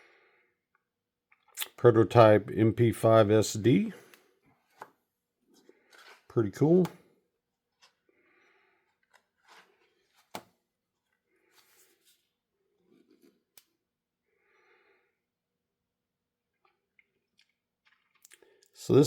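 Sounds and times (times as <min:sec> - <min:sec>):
book pages rustling: 0:04.1 - 0:07.0, 0:07.6 - 0:08.1, 0:08.8 - 0:13.6.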